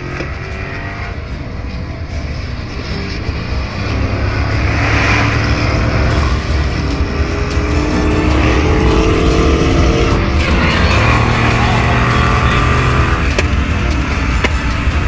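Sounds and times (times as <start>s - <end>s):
car exhaust revving: 2.0s - 15.0s.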